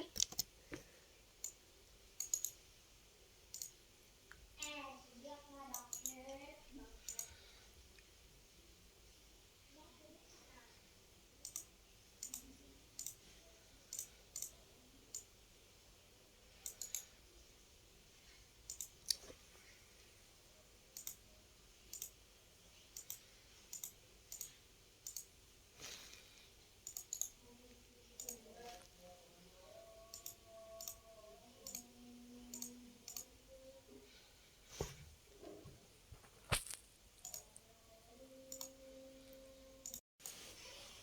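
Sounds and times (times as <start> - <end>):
faint room hiss: 0.0 - 41.0
computer mouse clicks: 0.1 - 0.8, 1.4 - 1.6, 2.2 - 2.6, 3.5 - 3.8, 5.7 - 6.4, 7.0 - 7.4, 11.4 - 13.3, 13.9 - 15.3, 16.6 - 17.1, 18.7 - 19.3, 20.9 - 21.2, 21.9 - 22.2, 23.0 - 25.3, 26.8 - 27.4, 28.2 - 28.9, 30.1 - 31.0, 31.6 - 31.9, 32.5 - 33.3, 37.2 - 37.5, 38.5 - 38.8, 39.8 - 40.5
soft rustle: 34.6 - 37.2.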